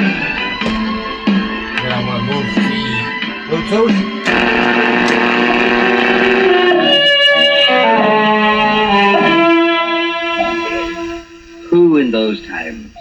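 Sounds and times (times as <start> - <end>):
held chords from radio speaker: 0.0 - 9.4.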